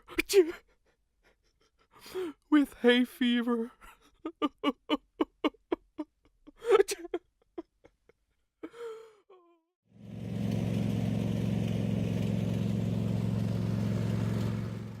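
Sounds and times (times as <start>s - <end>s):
lawnmower engine running: 9.9s - 15.0s.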